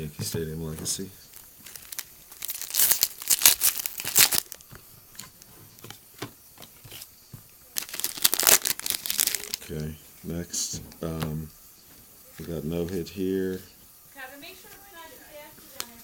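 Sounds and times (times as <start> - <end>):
wrapper tearing and crinkling: 1.3 - 4.7, 7.7 - 9.6.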